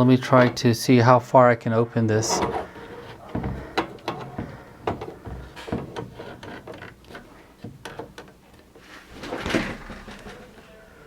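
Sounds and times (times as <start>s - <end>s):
case scraping slide: 0.1s - 0.8s, 2.2s - 7.4s
light clicks and knocks: 2.2s - 10.6s.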